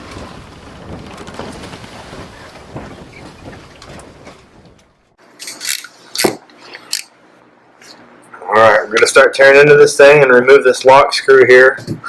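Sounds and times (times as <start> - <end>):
wind buffeting microphone: 0.0 - 5.2.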